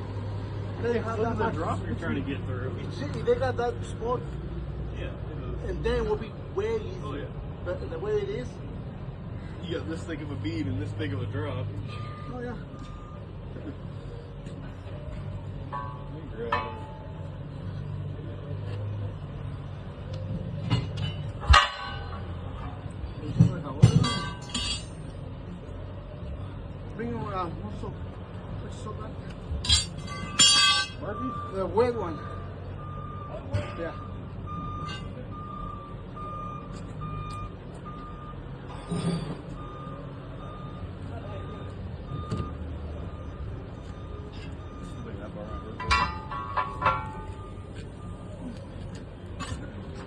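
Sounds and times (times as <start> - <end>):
low engine rumble: 0.0 - 50.0
tire tools clanking on rim: 9.5 - 25.4, 28.7 - 50.0
low engine hum: 31.0 - 50.0
backup alarm beeping: 32.8 - 38.4, 39.5 - 48.5.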